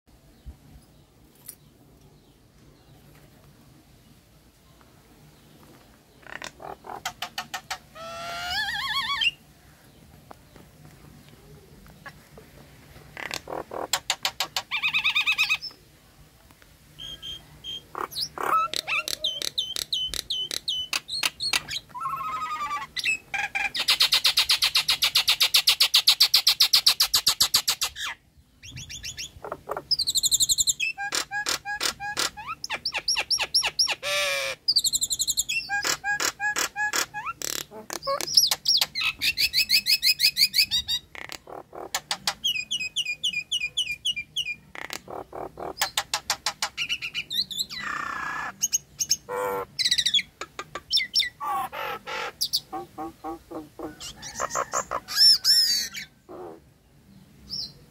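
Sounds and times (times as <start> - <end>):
myna calling: 6.1 - 9.5, 13.1 - 15.8, 17.0 - 25.2, 28.7 - 34.8, 35.4 - 56.7.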